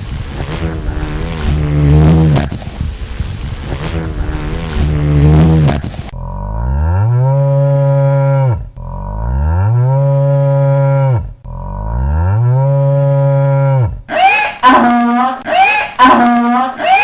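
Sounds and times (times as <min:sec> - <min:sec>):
cow mooing: 0:05.1 - 0:14.0.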